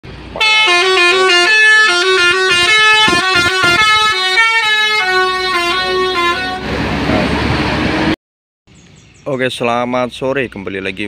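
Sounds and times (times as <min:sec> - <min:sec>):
multi-tone bus horn tune: 0:00.4 - 0:06.8.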